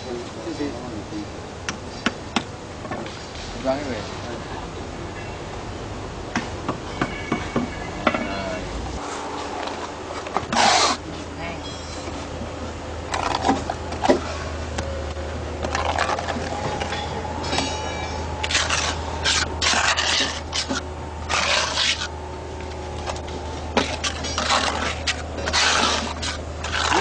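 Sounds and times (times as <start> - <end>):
low steady hum: 0.0 - 27.0
scraping on concrete panels: 15.6 - 22.1, 23.0 - 27.0.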